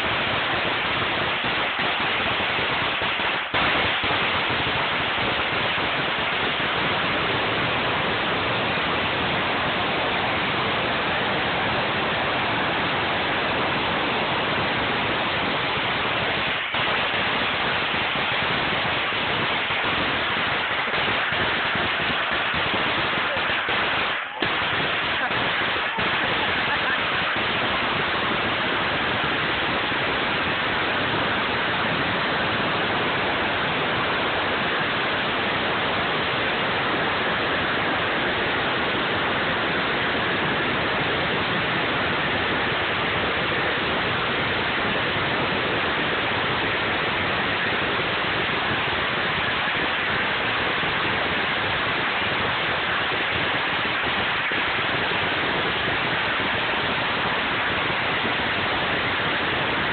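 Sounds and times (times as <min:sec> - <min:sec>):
firecrackers crackling: 0:00.0 - 0:59.9.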